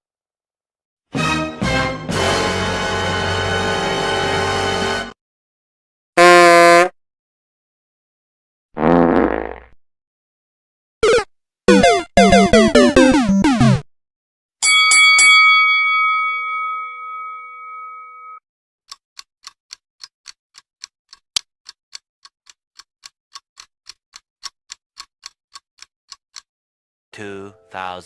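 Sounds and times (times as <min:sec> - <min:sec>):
clock ticking: 0:11.0 - 0:13.8, 0:18.9 - 0:26.5
bell-like ding: 0:14.6 - 0:18.4.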